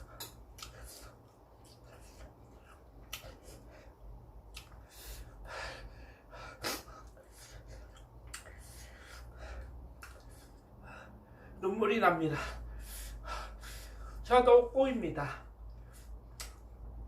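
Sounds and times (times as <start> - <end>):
man hissing breaths: 4.8 - 11.6, 12.4 - 14.2
man sniffing: 6.3 - 9.6.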